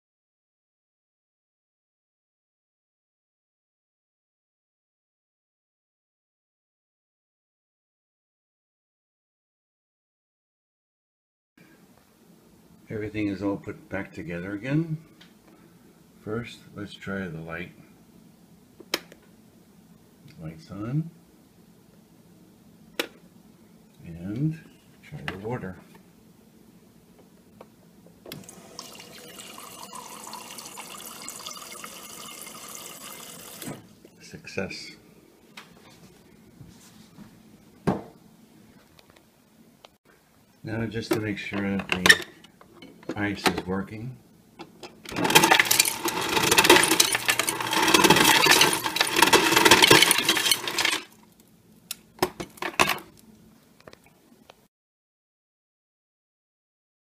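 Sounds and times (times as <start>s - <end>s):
water streaming from dispenser: 28.4s - 33.8s, 45.2s - 51.1s
ice pieces clinking: 45.1s - 51.2s.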